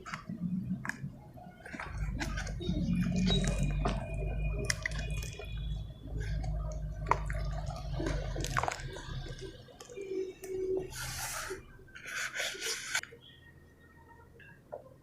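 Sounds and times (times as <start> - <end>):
small crackles and drips: 0.0 - 10.9
wet cement crumbling and squishing: 1.6 - 10.0.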